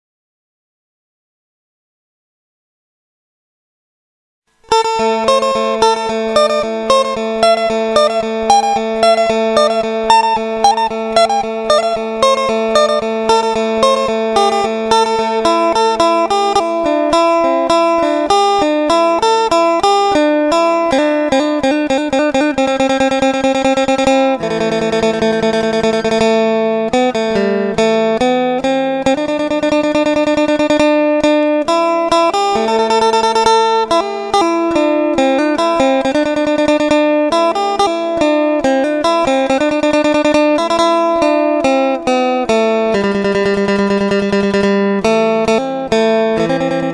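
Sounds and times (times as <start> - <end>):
plucked lute melody: 4.6 - 46.9.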